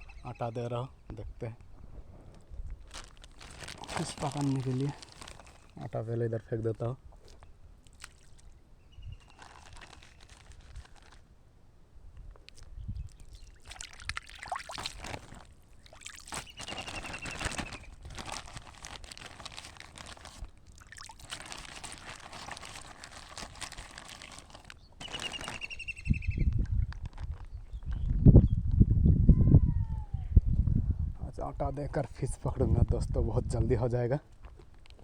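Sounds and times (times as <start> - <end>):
water splashing and trickling: 7.2 - 11.2, 12.5 - 25.6.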